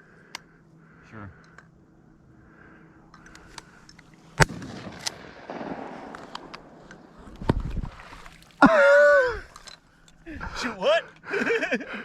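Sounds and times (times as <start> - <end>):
shotgun blasts: 4.4 - 7.4.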